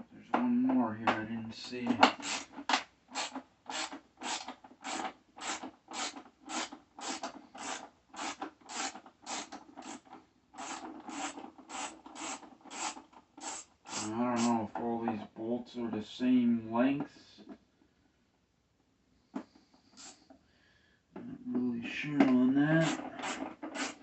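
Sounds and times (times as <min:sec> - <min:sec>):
hand ratchet rasping: 0:02.0 - 0:14.5, 0:22.8 - 0:24.0.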